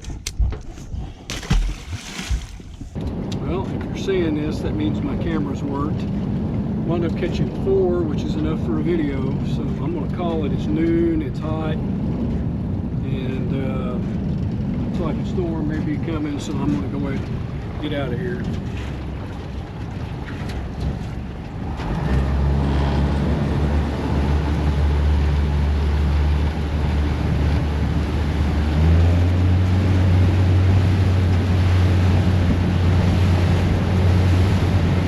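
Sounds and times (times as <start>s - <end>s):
wind noise on microphone: 0.0s - 35.0s
boat motor running: 14.0s - 35.0s.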